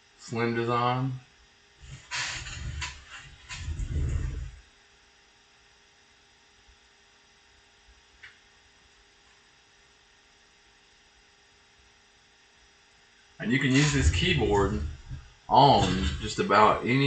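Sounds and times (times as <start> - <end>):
faint electrical hum: 0.0 - 17.0
brief low rumble: 13.4 - 16.4.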